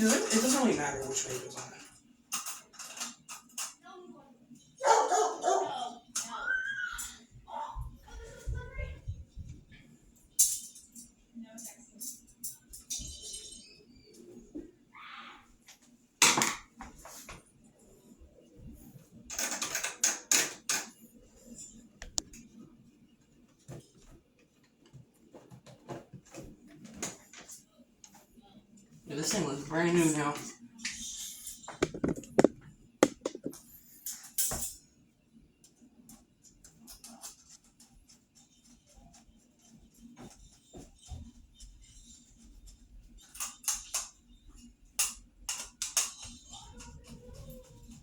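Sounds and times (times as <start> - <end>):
plastic fan parts clacking: 0.0 - 3.8, 31.1 - 34.7, 43.2 - 48.0
sharp knocks of fan parts: 31.7 - 33.6.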